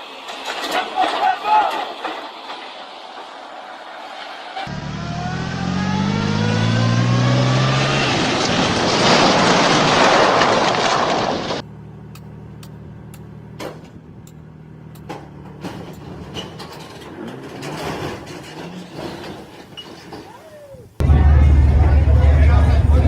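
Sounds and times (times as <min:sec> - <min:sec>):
loud rushing noise: 0:01.6 - 0:11.6
heavy vehicle engine revving: 0:04.0 - 0:10.7, 0:21.0 - 0:23.0
sharp clicks and knocks: 0:12.1 - 0:18.6.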